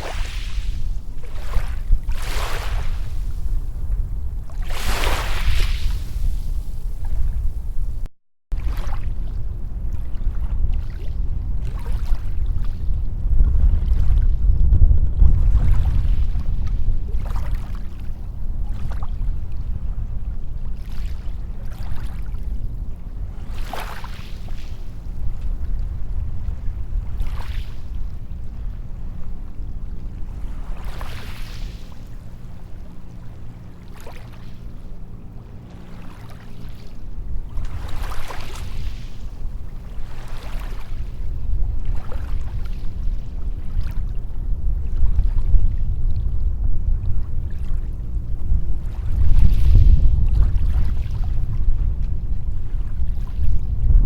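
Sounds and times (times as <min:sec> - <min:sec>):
waves breaking on beach: 0:00.0 - 0:03.8, 0:04.5 - 0:07.5, 0:23.3 - 0:25.0, 0:30.4 - 0:32.2, 0:35.6 - 0:44.2
water swishes: 0:00.0 - 0:14.5, 0:15.2 - 0:54.0
low surf rumble: 0:00.0 - 0:54.0.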